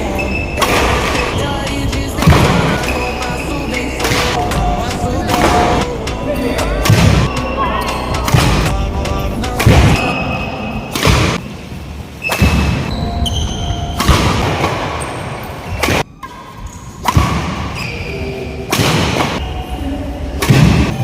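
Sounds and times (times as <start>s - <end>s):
shoe squeaks: 0.1s - 1.6s, 2.7s - 4.0s, 7.3s - 8.3s, 10.0s - 10.9s, 12.2s - 14.1s, 14.9s - 17.0s, 17.6s - 18.6s
racket hitting shuttlecock: 8.2s - 8.8s, 14.0s - 17.8s.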